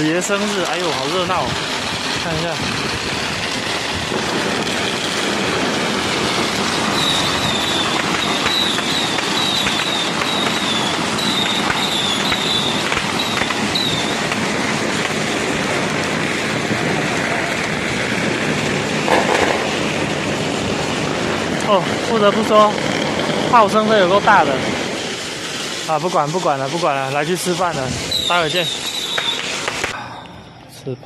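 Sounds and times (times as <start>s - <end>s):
firecrackers crackling: 0.0s - 30.0s.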